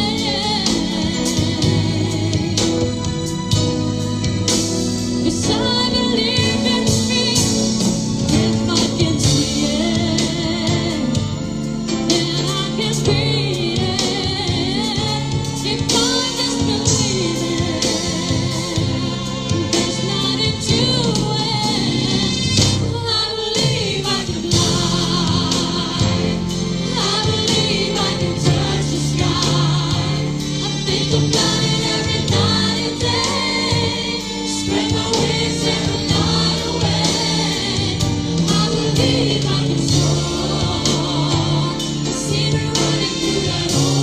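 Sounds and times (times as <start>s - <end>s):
band playing: 0.0s - 44.0s
steady drum beats: 0.0s - 44.0s
backing choir: 12.1s - 44.0s.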